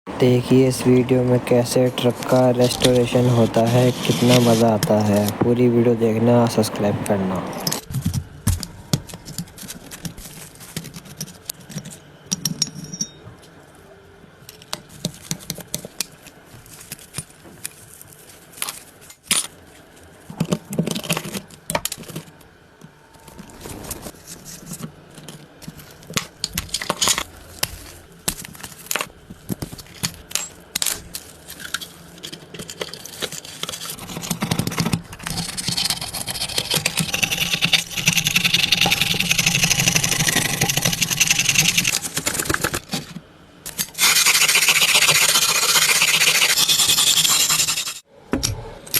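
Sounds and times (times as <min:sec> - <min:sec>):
hard objects clicking and scraping: 0:02.0 - 0:05.6, 0:24.3 - 0:46.6.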